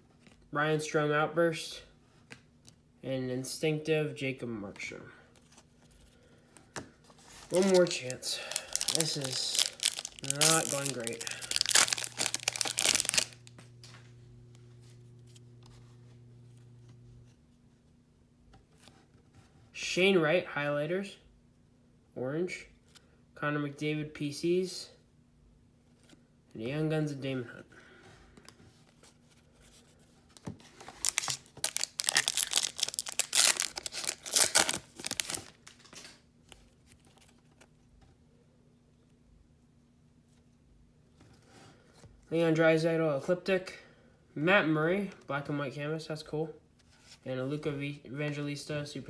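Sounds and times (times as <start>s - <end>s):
cards being handled: 7.2s - 14.1s, 30.4s - 37.7s
wrapper tearing and crinkling: 7.4s - 13.8s, 30.8s - 36.2s
steady low hum: 11.2s - 17.3s.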